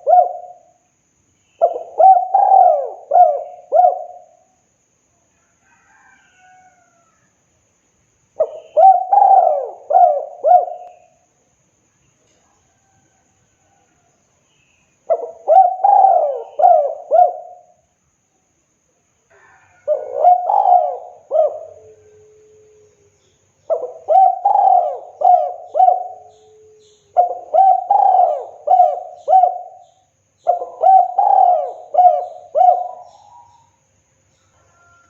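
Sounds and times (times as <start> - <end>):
dove cooing: 0.0 - 0.8, 1.6 - 4.5, 8.4 - 11.2, 15.1 - 17.8, 19.3 - 22.8, 23.7 - 33.8.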